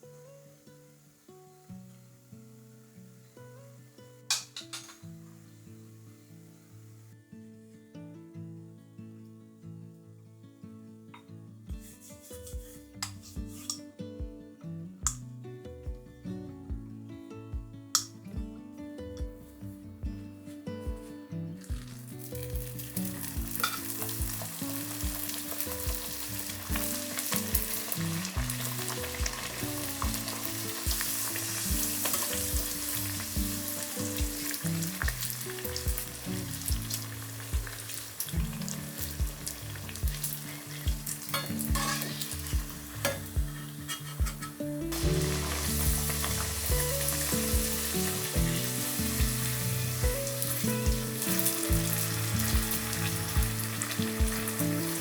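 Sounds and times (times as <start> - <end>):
food sizzling in hot oil: 21.6 - 55.0.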